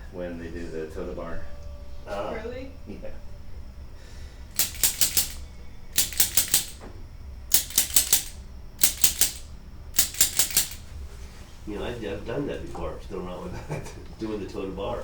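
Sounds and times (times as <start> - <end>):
sharp clicks of adjusting instrument: 4.5 - 5.4, 6.0 - 6.9, 7.5 - 10.9.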